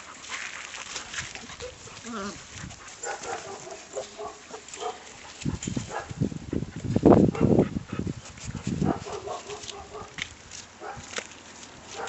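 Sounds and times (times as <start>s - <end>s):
dogs growling: 0.0s - 6.2s.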